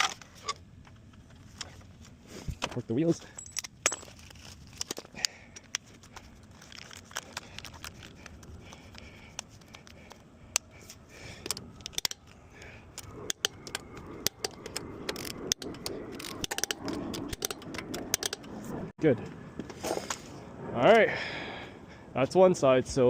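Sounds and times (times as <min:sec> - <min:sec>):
wrench scraping: 0:13.0 - 0:18.6.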